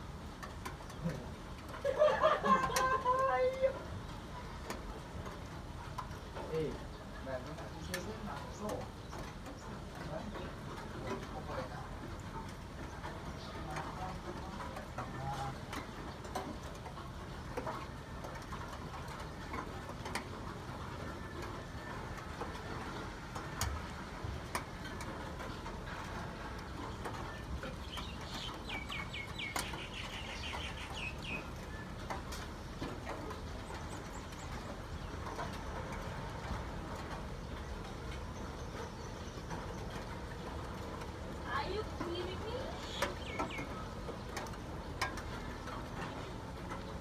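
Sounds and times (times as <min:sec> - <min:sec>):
outdoor background hiss: 0:00.0 - 0:47.0
bird chirping: 0:26.9 - 0:31.9, 0:42.8 - 0:43.9.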